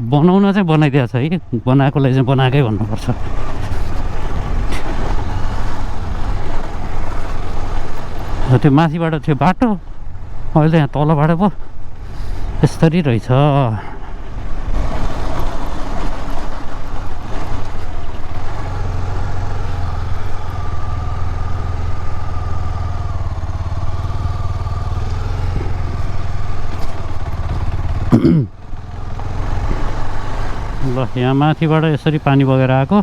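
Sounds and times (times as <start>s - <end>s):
motorcycle engine running: 2.5s - 8.7s, 14.3s - 33.0s.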